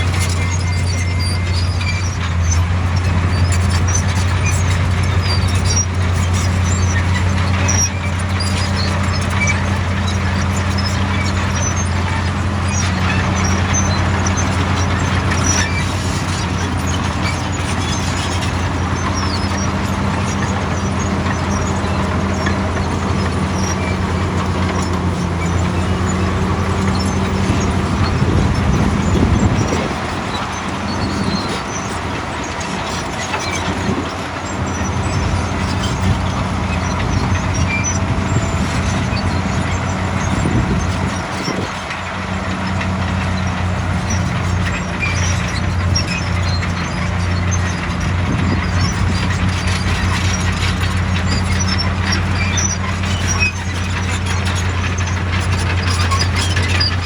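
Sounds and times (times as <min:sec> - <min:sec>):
diesel engine droning: 0:00.0 - 0:57.0.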